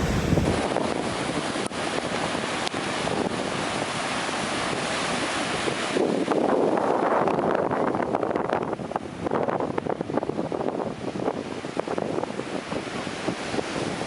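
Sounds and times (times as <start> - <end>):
surf breaking ashore: 0.0 - 14.0
wind: 0.0 - 14.0.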